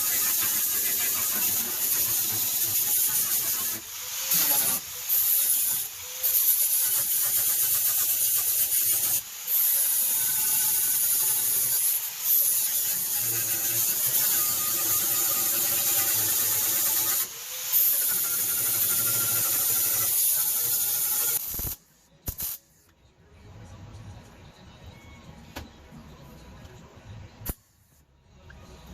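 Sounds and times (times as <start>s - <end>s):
high-pitched power tool: 0.0s - 21.8s.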